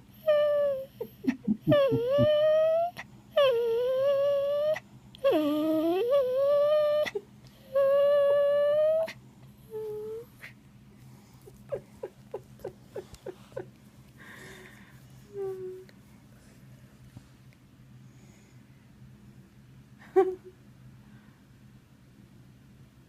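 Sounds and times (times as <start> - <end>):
dog whining: 0.0 - 10.6, 11.5 - 13.6.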